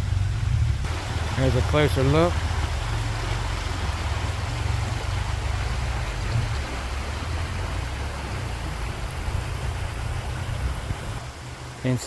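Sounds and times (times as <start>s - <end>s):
fluttering low rumble: 0.0s - 1.4s.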